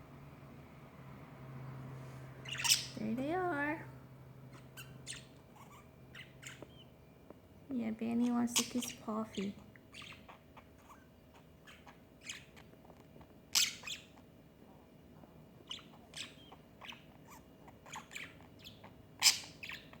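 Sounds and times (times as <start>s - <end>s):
loud sharp bird calls: 2.4s - 3.0s, 4.5s - 7.0s
parrots chirping: 2.4s - 3.8s, 4.4s - 7.4s, 8.2s - 14.4s, 15.6s - 20.0s.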